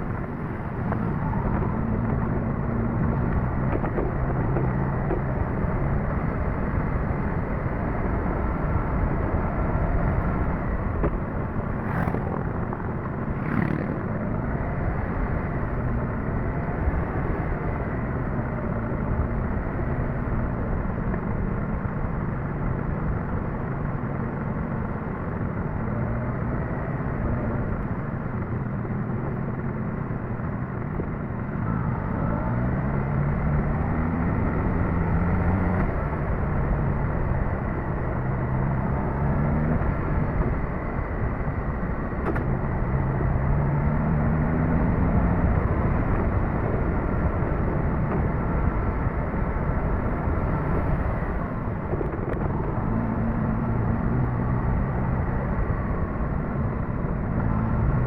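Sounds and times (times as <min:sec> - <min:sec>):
road noise rushing: 0:00.0 - 0:58.0
motorcycle engine revving: 0:10.6 - 0:14.4.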